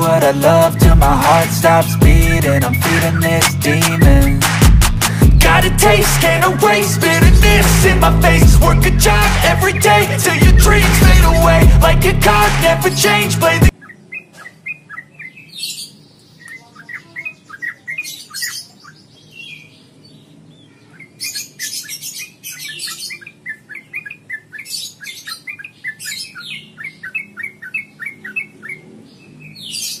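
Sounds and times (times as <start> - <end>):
bulbul chattering calls: 20.8 - 30.0.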